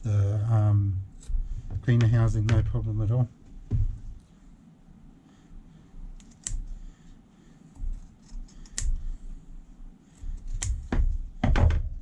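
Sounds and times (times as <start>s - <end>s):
scissors snipping cloth: 6.2s - 6.7s, 7.8s - 9.0s, 10.4s - 10.9s.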